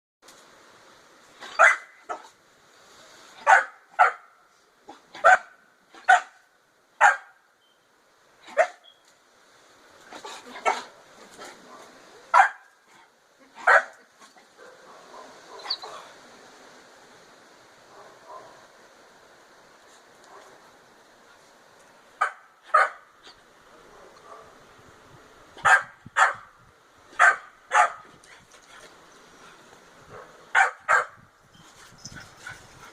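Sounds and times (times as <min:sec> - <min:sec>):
dog barking: 0:01.5 - 0:02.2, 0:03.4 - 0:04.3, 0:05.2 - 0:06.4, 0:07.0 - 0:07.4, 0:08.5 - 0:08.8, 0:11.6 - 0:12.7, 0:13.6 - 0:14.0, 0:14.6 - 0:16.0, 0:17.9 - 0:18.6, 0:22.2 - 0:23.0, 0:23.9 - 0:24.6, 0:25.6 - 0:26.5, 0:27.2 - 0:28.1, 0:30.1 - 0:31.2.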